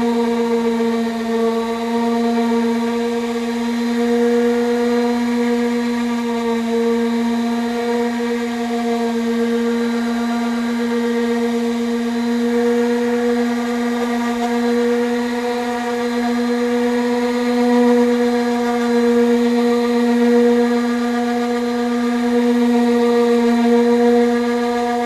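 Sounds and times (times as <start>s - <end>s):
power sander whining: 0.0s - 25.0s.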